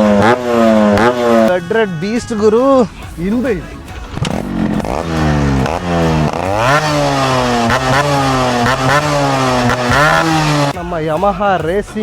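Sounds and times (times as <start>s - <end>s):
two-stroke motorcycle revving: 0.0s - 1.9s, 3.9s - 10.8s.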